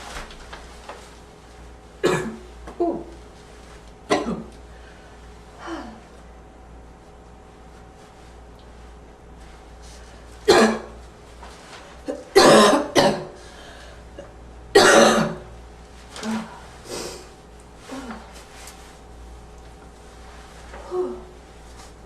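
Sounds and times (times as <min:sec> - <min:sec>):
person coughing: 0:02.0 - 0:03.0, 0:04.1 - 0:04.5, 0:10.5 - 0:11.0, 0:12.1 - 0:13.4, 0:14.2 - 0:15.5.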